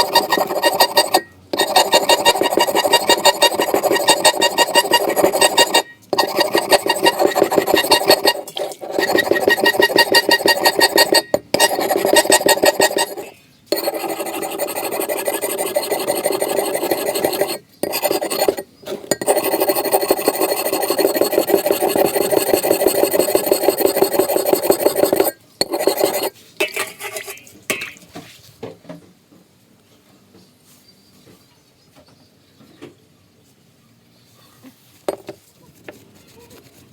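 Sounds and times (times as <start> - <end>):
abrasive rasping on axe: 0.0 - 26.3.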